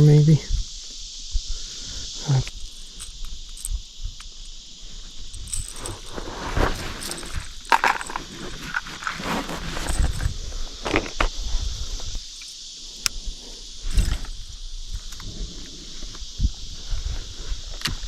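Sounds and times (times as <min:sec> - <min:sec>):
insects buzzing: 0:00.0 - 0:18.0
handling clicks and rustling: 0:02.5 - 0:03.8, 0:05.3 - 0:10.3.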